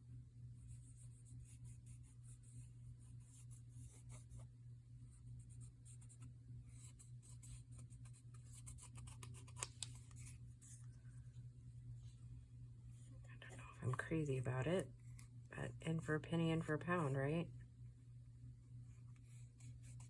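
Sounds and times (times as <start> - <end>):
low steady hum: 0.0 - 20.0
scratchy dabs and rubs on paper: 0.7 - 4.5.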